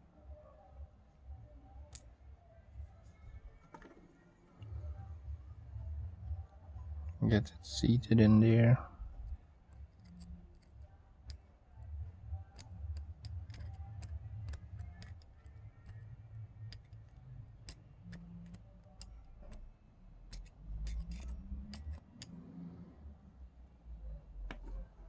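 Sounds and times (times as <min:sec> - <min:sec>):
small parts clicking and tapping: 0:01.8 - 0:02.2, 0:09.0 - 0:23.1.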